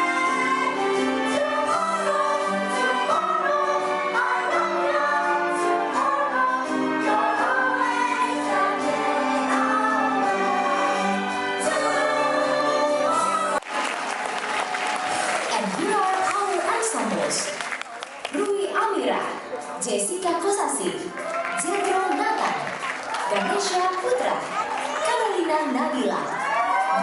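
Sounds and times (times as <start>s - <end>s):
group singing show tune: 0.0s - 14.0s.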